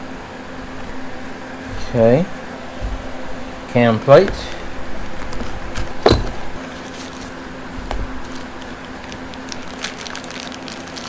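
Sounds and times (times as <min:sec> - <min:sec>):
dull knock: 0:00.0 - 0:06.6
steady low hum: 0:00.0 - 0:10.1
packaging rustling and clicks: 0:00.0 - 0:11.0.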